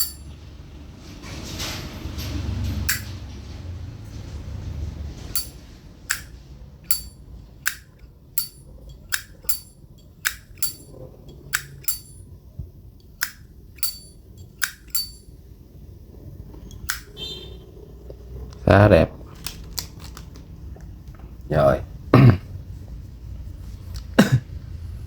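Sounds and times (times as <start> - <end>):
lighter lid clicking open and shut: 2.9 - 3.1, 5.4 - 12.2, 13.0 - 15.2, 16.8 - 17.2.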